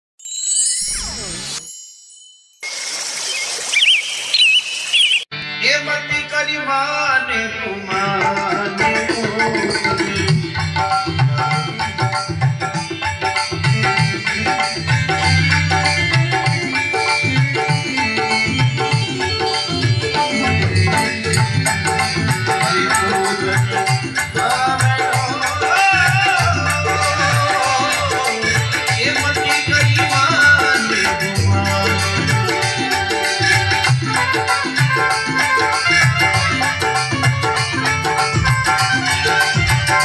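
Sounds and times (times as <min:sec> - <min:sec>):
instrumental melody: 0:05.3 - 0:40.0
hand drum rhythm: 0:08.3 - 0:40.0.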